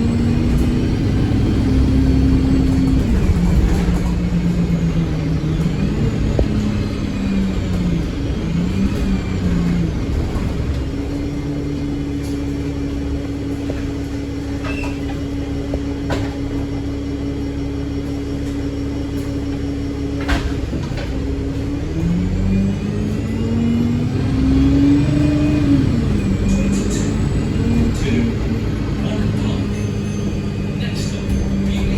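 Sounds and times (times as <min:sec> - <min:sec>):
bus engine revving: 0:00.0 - 0:31.9.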